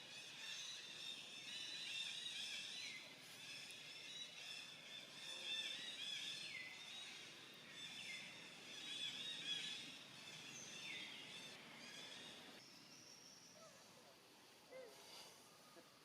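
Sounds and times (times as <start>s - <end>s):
faint birds chirping: 0.0s - 16.0s.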